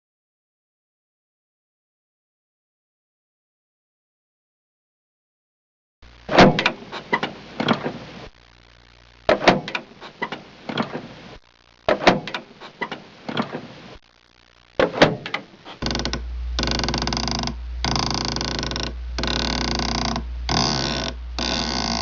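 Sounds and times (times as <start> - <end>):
steady noise with low hum: 6.0 - 22.0
sharp mechanical clicks and knocks: 6.3 - 8.1, 9.3 - 11.2, 11.9 - 13.7, 14.8 - 22.0.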